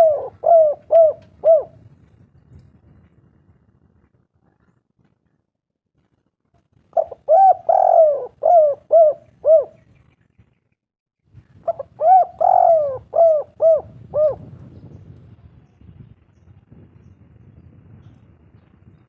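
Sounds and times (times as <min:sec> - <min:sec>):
dove cooing: 0:00.0 - 0:01.8, 0:07.0 - 0:09.8, 0:11.6 - 0:14.6.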